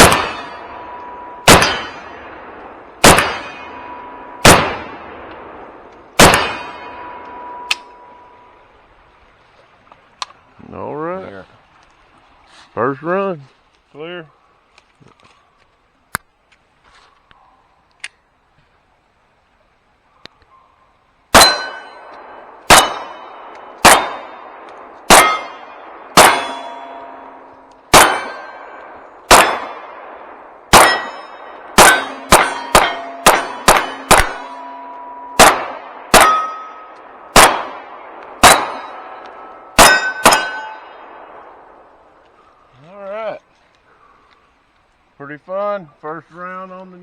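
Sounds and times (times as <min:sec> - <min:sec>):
gunshots: 0:00.0 - 0:07.5, 0:21.3 - 0:41.5
steel plates ringing clang: 0:00.1 - 0:02.4, 0:06.4 - 0:08.4, 0:21.4 - 0:22.1, 0:25.1 - 0:28.8, 0:30.8 - 0:35.6, 0:36.2 - 0:37.0, 0:38.4 - 0:41.1.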